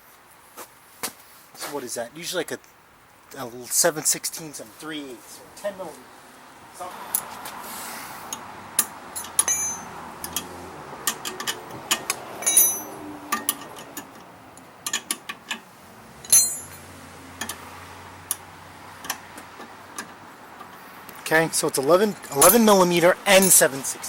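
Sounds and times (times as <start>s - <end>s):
metallic clinks of wrenches: 8.8s - 15.6s, 16.2s - 17.6s, 21.9s - 23.8s.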